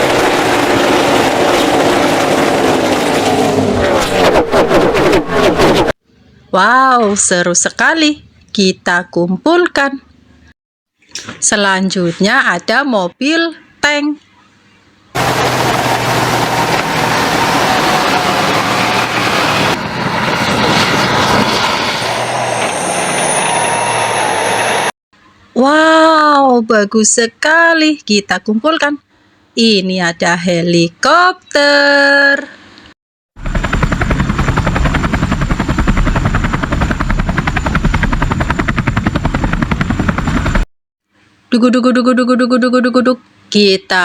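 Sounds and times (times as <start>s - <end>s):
helicopter rotor chopping: 0.0s - 6.0s, 15.2s - 24.9s, 33.4s - 40.7s
tank engine humming: 15.2s - 24.9s.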